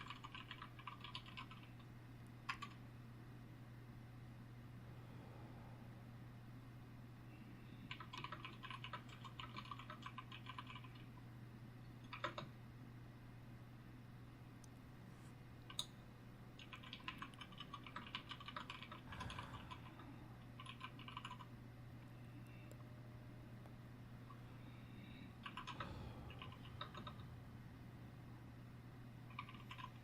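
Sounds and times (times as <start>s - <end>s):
typing on computer keyboard: 0.0s - 2.8s, 7.8s - 11.2s, 12.0s - 12.5s, 16.6s - 21.5s, 25.4s - 27.3s, 29.3s - 30.0s
steady low hum: 0.0s - 30.0s.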